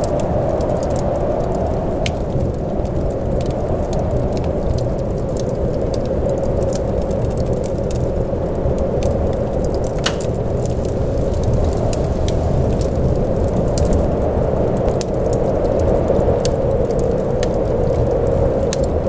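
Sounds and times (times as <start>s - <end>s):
rainfall: 0.0s - 19.0s
sharp ticks and crackles: 10.0s - 10.4s.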